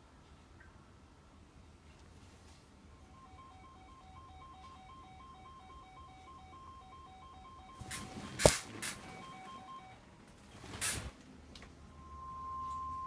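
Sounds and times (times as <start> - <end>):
low hum: 2.8 - 10.0, 11.6 - 13.0
two-tone alert signal: 3.0 - 10.0, 11.9 - 13.0.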